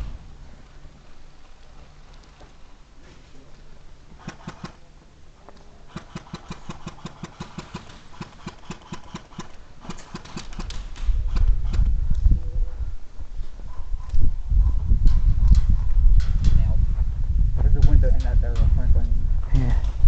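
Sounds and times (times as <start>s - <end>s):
airsoft gun pops: 5.9s - 12.2s.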